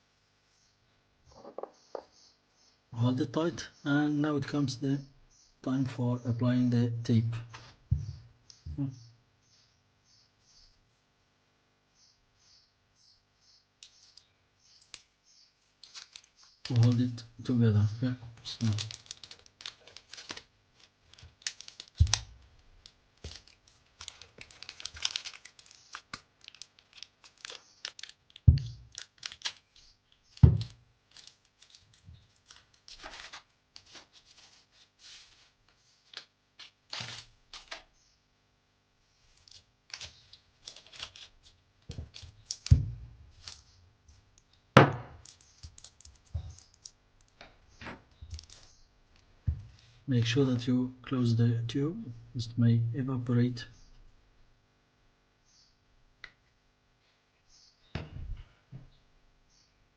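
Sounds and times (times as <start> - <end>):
adhesive tape pulled and torn: 18.6 - 33.2, 39.3 - 43.8
shoe knocking: 44.8 - 45.2.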